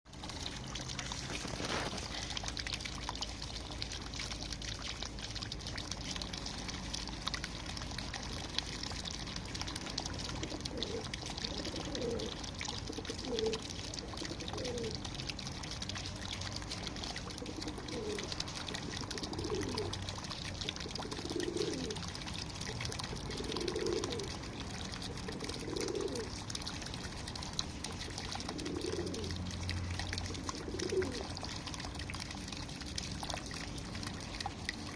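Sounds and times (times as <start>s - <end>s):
water pouring and trickling: 0.1s - 34.9s
pigeons cooing: 10.4s - 15.1s, 17.4s - 20.0s, 20.8s - 22.0s, 23.0s - 24.4s, 25.0s - 26.4s, 27.8s - 29.4s, 30.2s - 31.4s.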